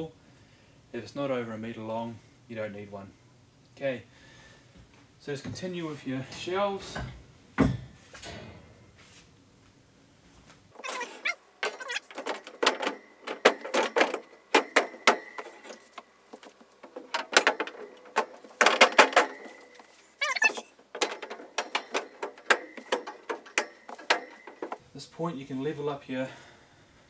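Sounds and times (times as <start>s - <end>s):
brief warbling squeak: 10.8s - 12.1s, 20.2s - 20.7s
shelves clicking into plastic clips: 10.8s - 24.8s.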